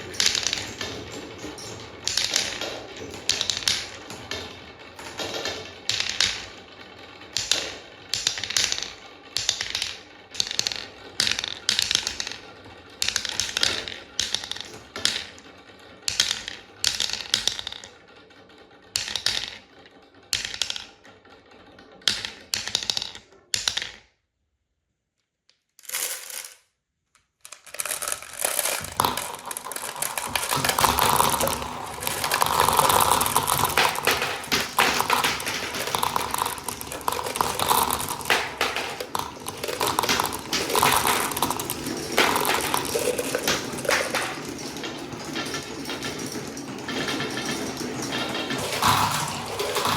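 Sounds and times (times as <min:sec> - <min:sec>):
marbles clattering down wooden run: 0:00.0 - 0:24.1, 0:25.8 - 0:26.6, 0:27.4 - 0:49.9.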